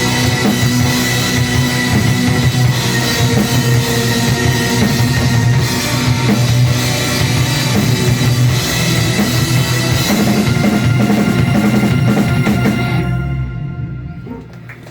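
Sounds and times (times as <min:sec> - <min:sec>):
heavy metal band playing loud: 0:00.0 - 0:14.2
drum kit: 0:00.0 - 0:14.7.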